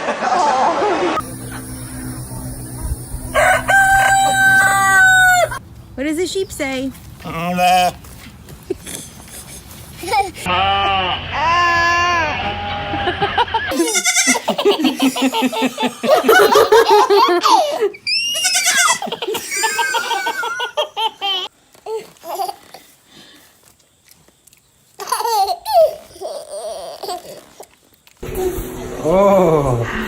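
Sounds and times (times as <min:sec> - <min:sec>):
baby laughing: 0:08.8 - 0:10.5, 0:13.2 - 0:22.8, 0:25.0 - 0:27.7.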